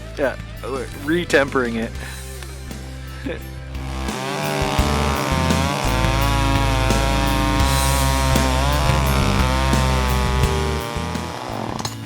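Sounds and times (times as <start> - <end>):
chainsaw revving and cutting: 3.8 - 12.0.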